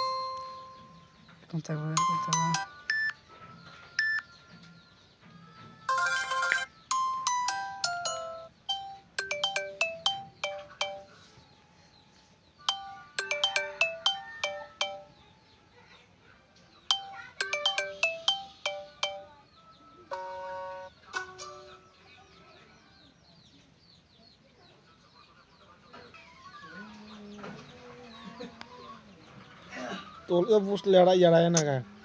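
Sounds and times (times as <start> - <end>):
electronic ringtone melodies: 0.0 - 4.3, 5.9 - 11.4, 12.6 - 15.5, 16.9 - 21.8.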